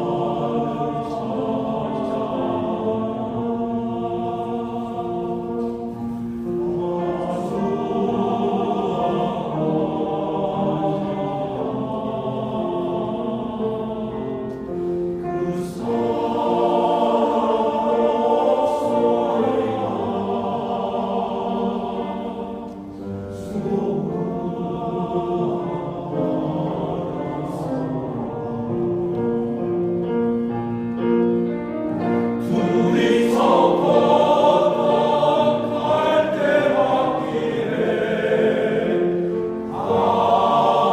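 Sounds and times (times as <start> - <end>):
men's choir singing: 0.0 - 30.4, 31.0 - 40.9.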